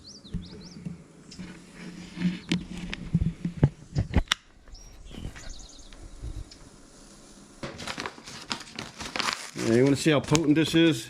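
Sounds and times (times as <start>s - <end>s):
faint bird chirps: 4.4s - 7.2s.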